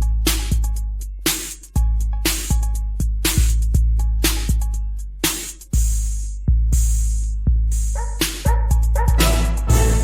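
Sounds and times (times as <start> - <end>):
dance music: 7.8 - 10.0.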